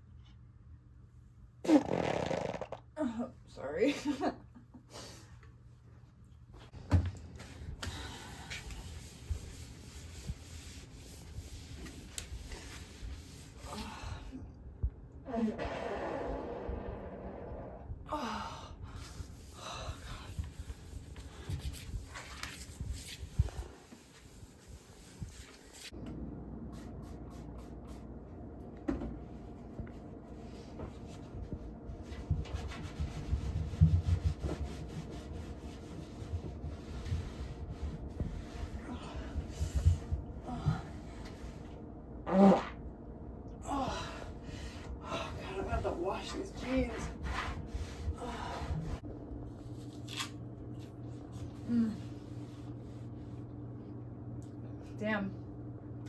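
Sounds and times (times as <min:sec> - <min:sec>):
fart: 0:01.6 - 0:02.9, 0:42.2 - 0:42.8
woman breathing: 0:18.0 - 0:20.8.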